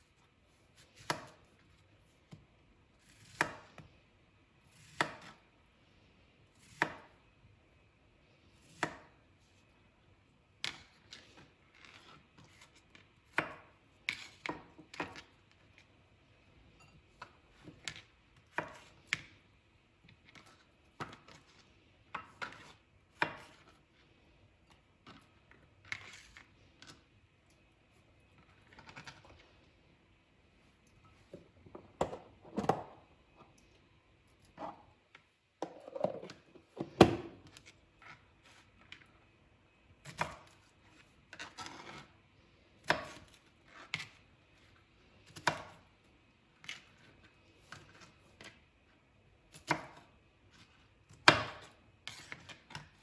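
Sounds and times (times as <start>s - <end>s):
knife chopping on cutting board: 3.0s - 3.8s, 4.8s - 5.4s, 22.2s - 23.7s.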